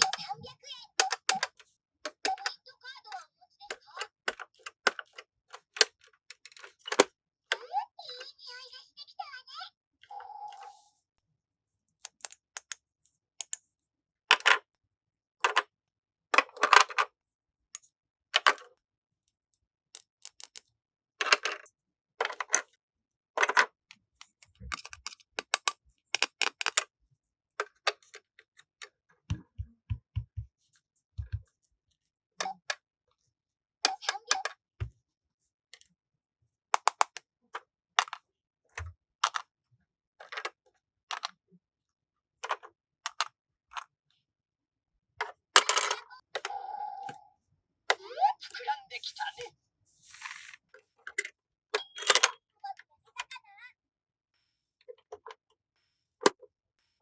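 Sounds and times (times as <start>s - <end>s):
plastic toy pieces clicking: 0.0s - 2.6s, 3.7s - 7.6s, 12.0s - 13.6s, 16.4s - 17.1s, 17.8s - 18.7s, 19.9s - 22.8s, 24.3s - 26.9s, 36.7s - 37.3s, 38.0s - 38.3s, 39.2s - 39.5s, 40.2s - 41.4s, 42.4s - 43.9s, 45.2s - 46.5s.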